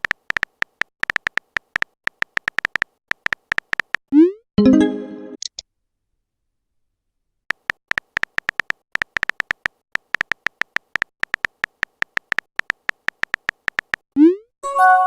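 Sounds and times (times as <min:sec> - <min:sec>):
smartphone keyboard tapping clicks: 0:00.0 - 0:04.0, 0:07.5 - 0:14.0.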